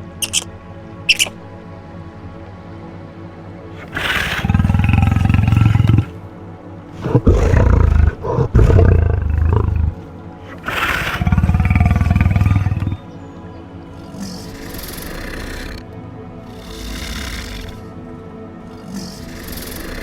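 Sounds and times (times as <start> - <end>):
big cat roaring: 3.8 - 6.2, 7.0 - 13.1, 13.9 - 17.9, 18.6 - 20.0.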